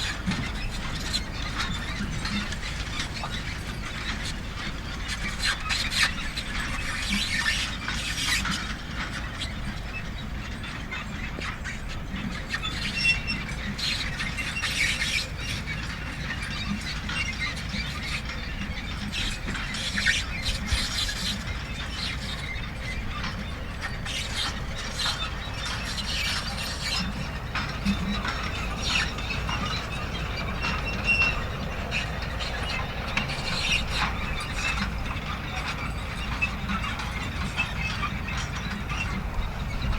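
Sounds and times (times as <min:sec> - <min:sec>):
chains squealing and ratcheting: 0:12.6 - 0:39.9.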